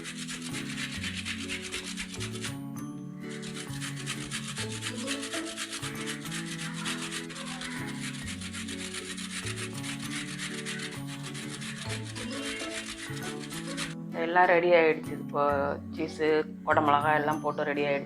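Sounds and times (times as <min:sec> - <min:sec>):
cheese rubbed over hand grater: 0:00.0 - 0:14.0
slow low background music: 0:00.6 - 0:05.0, 0:13.9 - 0:18.0.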